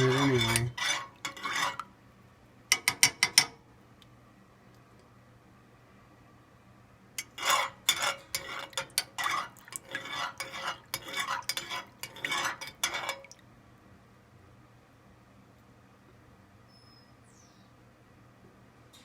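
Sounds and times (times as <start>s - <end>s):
utensil stirring in a pot: 0.0s - 1.9s, 7.2s - 13.4s.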